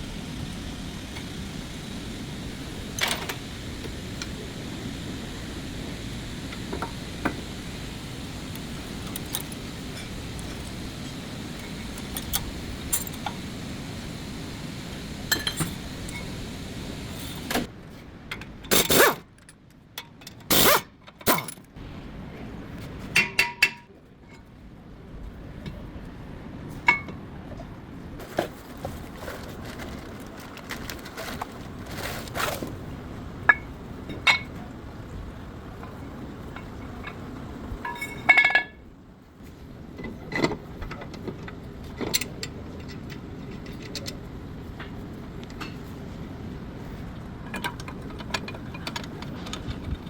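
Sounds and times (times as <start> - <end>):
steady background noise: 0.0 - 50.0
metal tools clinking: 11.6 - 13.2, 20.3 - 21.7.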